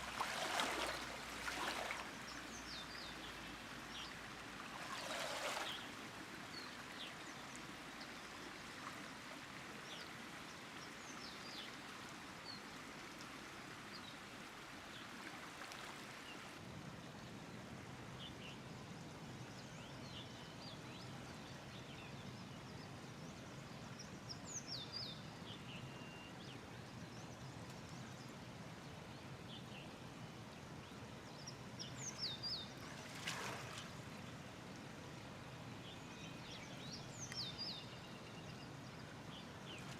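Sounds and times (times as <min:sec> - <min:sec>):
flowing river water: 0:00.0 - 0:19.4, 0:21.1 - 0:39.9.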